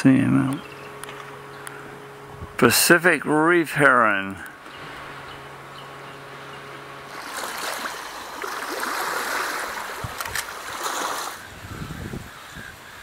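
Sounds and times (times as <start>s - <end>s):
faint ticks: 0.5s - 1.8s
wave washing on shore: 7.1s - 11.4s.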